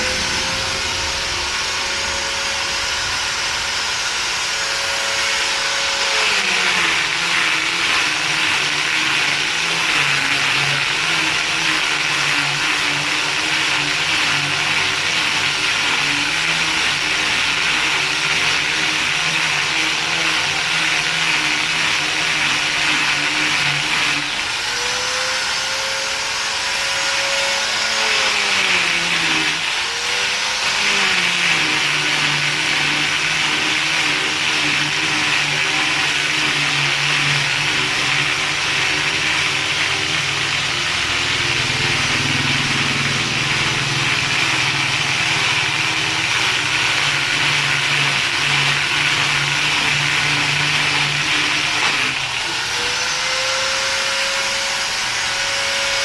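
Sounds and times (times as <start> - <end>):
motor running: 0.0 - 56.0.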